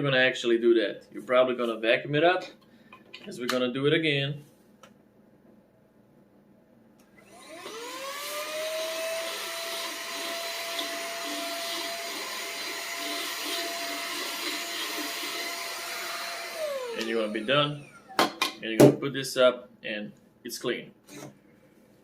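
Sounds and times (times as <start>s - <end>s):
handheld vacuum cleaner motor whine: 7.2s - 18.4s.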